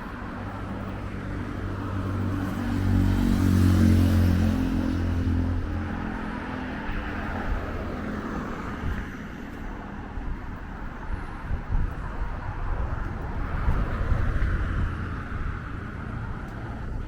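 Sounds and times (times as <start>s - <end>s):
car engines rumbling: 0.0s - 17.0s.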